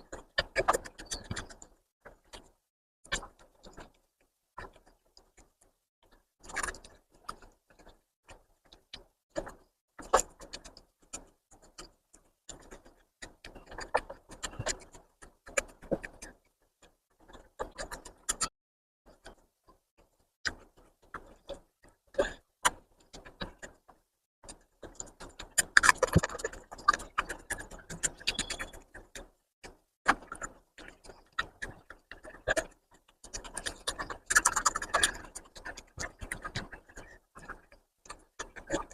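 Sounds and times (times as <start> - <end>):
wet chewing: 0.1 - 18.5, 24.5 - 38.9
mouth smacking clicks: 17.2 - 18.5, 24.5 - 38.9.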